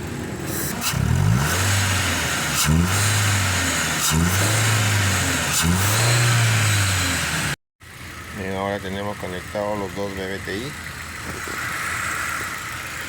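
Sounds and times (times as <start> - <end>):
car engine revving: 0.3 - 8.4.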